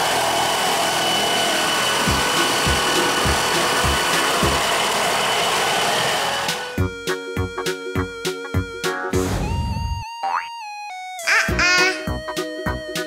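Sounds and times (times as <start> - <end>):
helicopter rushing hiss: 0.0 - 6.8
helicopter rotor thumps: 2.0 - 5.6.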